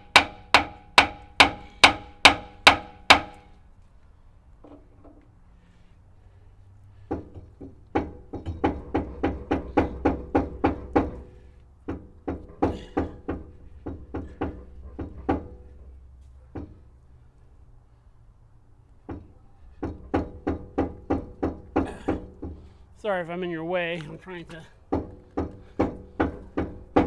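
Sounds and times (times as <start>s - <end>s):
hammer blows on metal: 0.0s - 3.5s.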